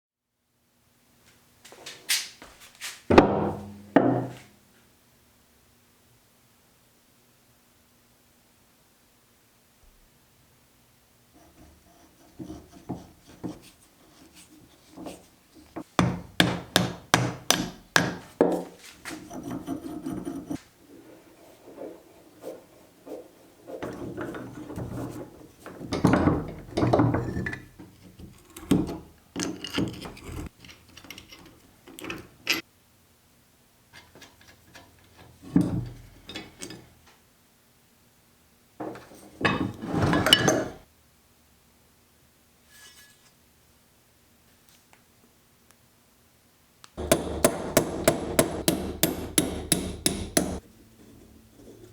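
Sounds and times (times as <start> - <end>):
hammer striking metal: 16.0 - 18.2, 47.0 - 50.6
metal parts scraping and clunking: 17.4 - 32.6, 34.0 - 37.0, 38.8 - 40.8, 42.7 - 43.3, 47.0 - 51.9.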